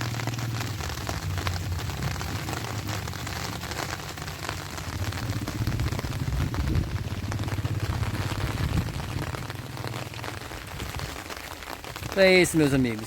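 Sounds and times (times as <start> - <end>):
rain falling: 0.0 - 13.0
raindrops ticking: 0.0 - 13.0
low rumble: 0.6 - 11.1.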